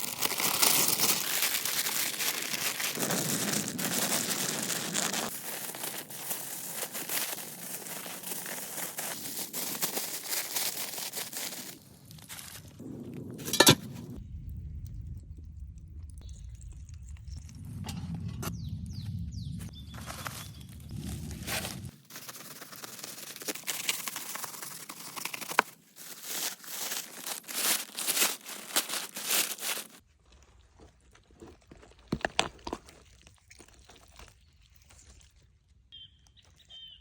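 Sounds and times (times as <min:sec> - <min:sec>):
aluminium foil crinkling and tearing: 0:00.0 - 0:12.8, 0:20.1 - 0:35.4
faint crackles and clicks: 0:00.0 - 0:18.5.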